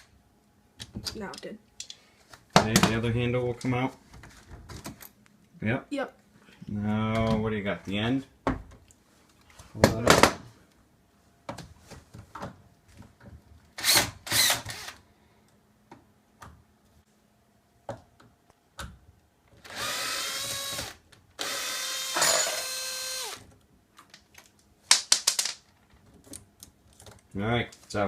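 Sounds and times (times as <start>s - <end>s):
cordless drill whining: 13.8s - 15.0s, 19.6s - 23.4s.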